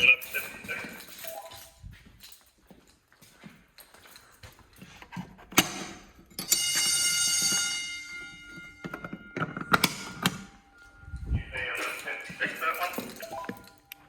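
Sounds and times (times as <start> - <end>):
shrill fire alarm tone: 6.3 - 14.0.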